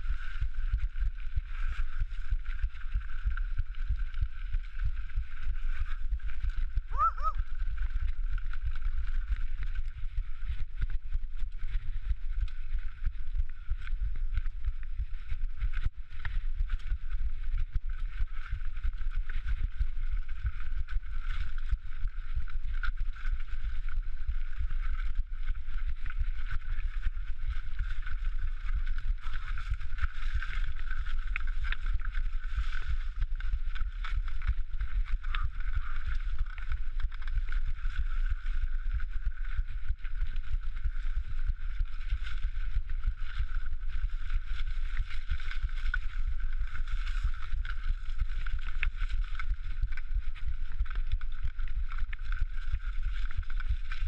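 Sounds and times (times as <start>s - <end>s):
mountain bike rattling over rocks: 0.0s - 54.0s.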